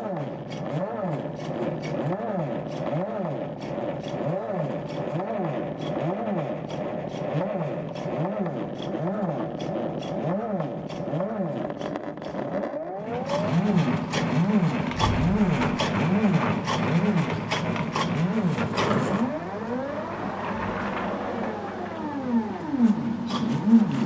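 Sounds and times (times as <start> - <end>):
machine motors whining: 12.7 - 24.0.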